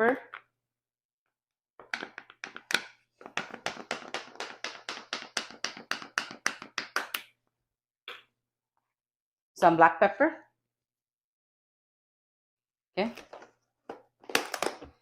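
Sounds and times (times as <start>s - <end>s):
spice bottle shaken and tapped: 1.8s - 7.2s.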